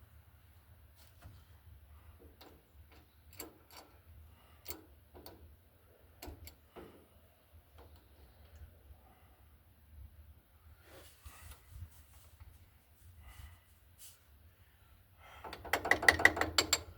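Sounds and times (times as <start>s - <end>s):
hand tools clicking on metal: 2.4s - 4.0s, 15.4s - 16.9s.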